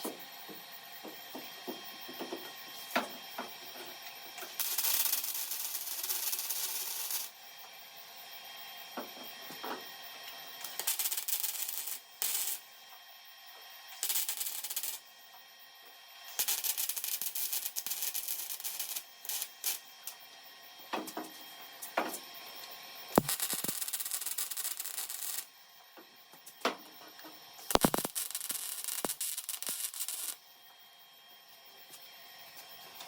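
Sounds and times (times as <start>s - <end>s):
welding arc crackling: 4.6s - 7.3s, 10.6s - 12.7s, 13.9s - 15.1s, 16.3s - 20.2s, 23.1s - 25.5s, 27.6s - 30.4s.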